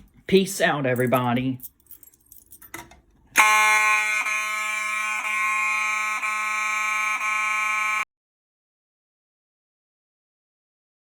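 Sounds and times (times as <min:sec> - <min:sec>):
fire alarm horns: 0:03.4 - 0:08.1.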